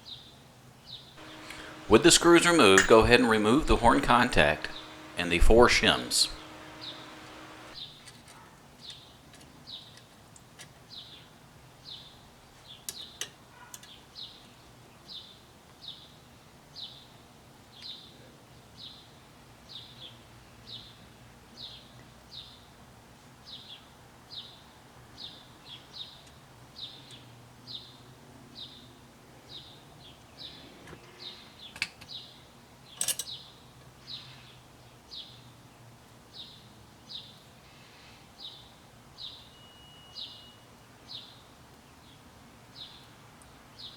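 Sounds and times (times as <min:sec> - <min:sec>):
metallic clicks of small parts: 0:33.0 - 0:33.3.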